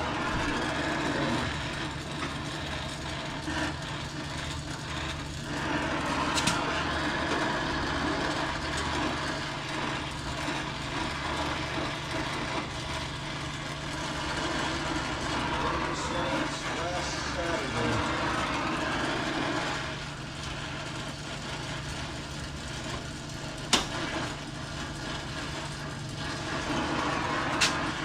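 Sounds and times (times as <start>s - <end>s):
motor humming: 0.0s - 22.6s.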